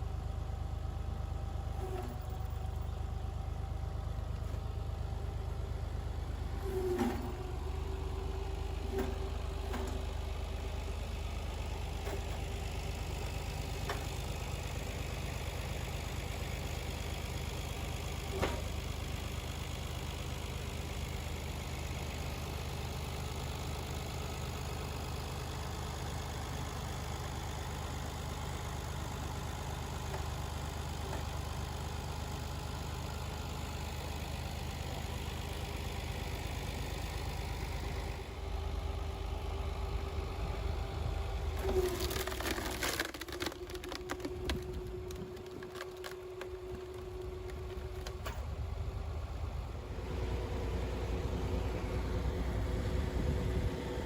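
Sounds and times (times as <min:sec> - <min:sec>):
log splitter engine running: 0:00.0 - 0:54.0
wood cracking and splintering: 0:41.5 - 0:48.5.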